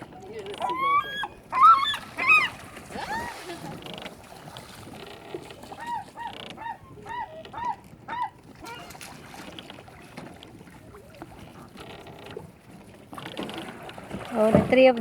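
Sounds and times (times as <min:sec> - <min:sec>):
seagulls calling: 0:00.3 - 0:03.8, 0:05.6 - 0:09.1.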